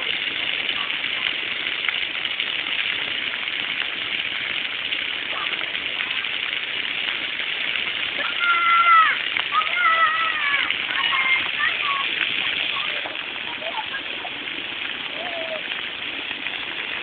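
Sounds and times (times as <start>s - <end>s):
waterfall rushing: 4.3s - 17.0s.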